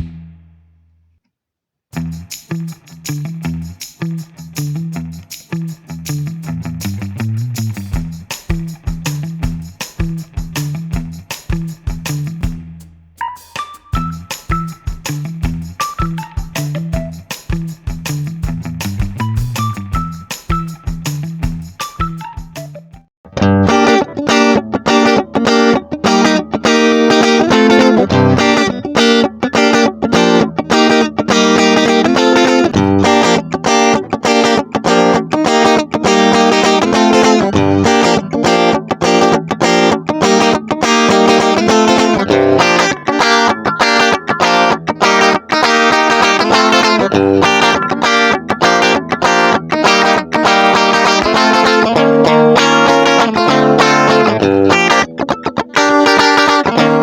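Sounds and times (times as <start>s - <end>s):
bass line: 0.0s - 1.0s, 4.5s - 23.7s, 28.1s - 28.6s
electric guitar: 13.3s - 57.0s.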